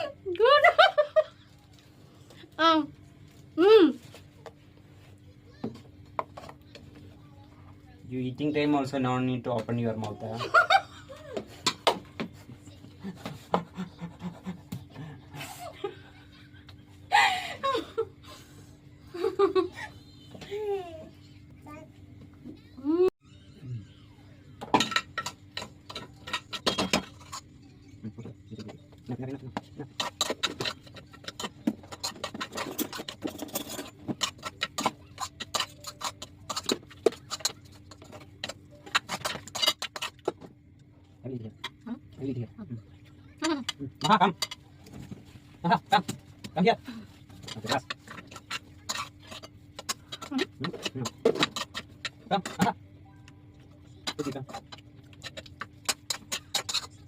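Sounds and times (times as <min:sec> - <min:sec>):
faint steady hum: 0:10.0 - 0:57.0
person panting and laughing: 0:17.1 - 0:18.6.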